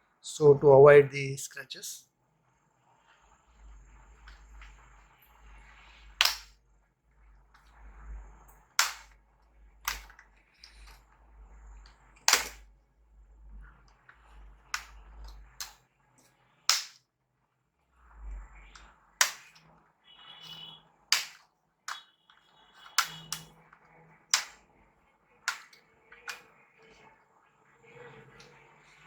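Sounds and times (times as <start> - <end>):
plastic clicks and snaps: 6.2 - 6.5, 8.8 - 9.1, 9.8 - 10.9, 12.2 - 12.6, 14.8 - 15.8, 16.7 - 17.0, 20.4 - 22.0, 22.8 - 23.5, 24.3 - 24.6, 25.5 - 27.0.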